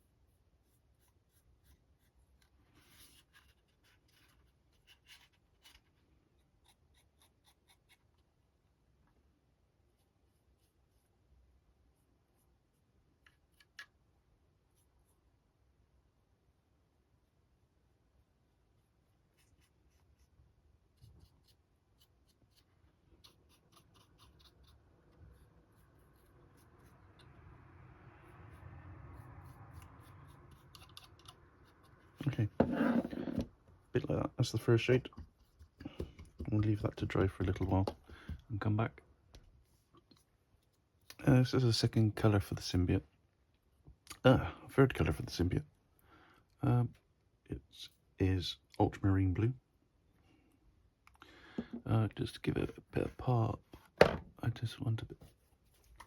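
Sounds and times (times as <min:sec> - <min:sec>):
paintbrush scratching and tapping: 0:20.9 - 0:27.4, 0:29.1 - 0:33.5.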